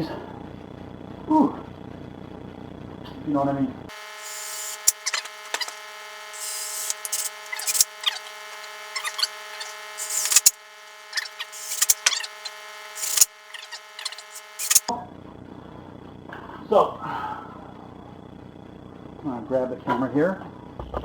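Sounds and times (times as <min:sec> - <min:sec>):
steady hum: 0:03.8 - 0:16.5
power drill driving screws: 0:04.2 - 0:05.8, 0:06.4 - 0:10.6, 0:11.2 - 0:12.3.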